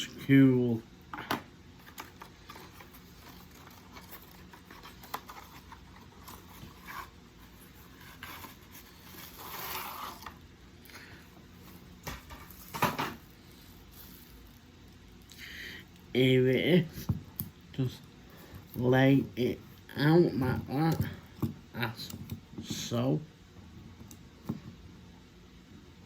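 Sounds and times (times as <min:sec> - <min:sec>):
packaging rustling: 0:01.8 - 0:10.4.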